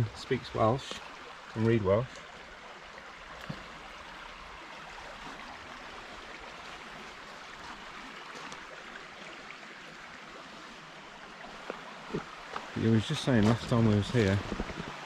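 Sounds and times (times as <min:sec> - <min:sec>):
stream flowing over rocks: 0:00.0 - 0:15.0.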